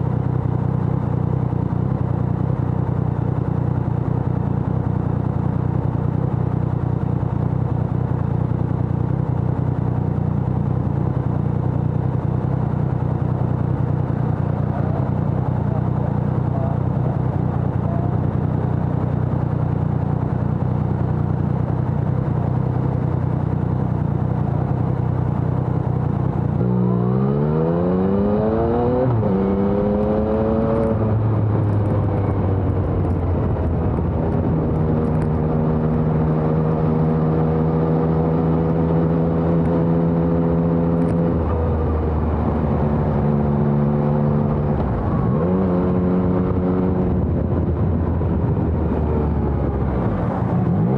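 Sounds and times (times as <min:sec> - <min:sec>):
motorcycle engine revving: 0:21.1 - 0:50.9.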